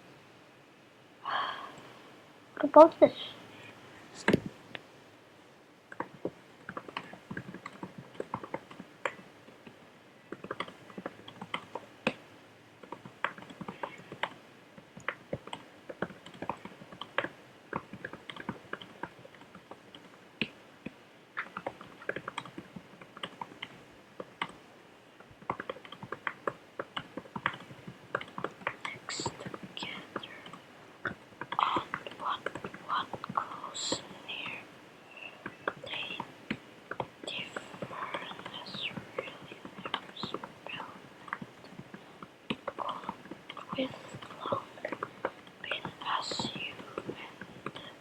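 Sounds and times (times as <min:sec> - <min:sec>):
keyboard typing: 0:05.9 - 0:12.2, 0:12.8 - 0:24.6, 0:25.2 - 0:34.6, 0:35.2 - 0:48.0.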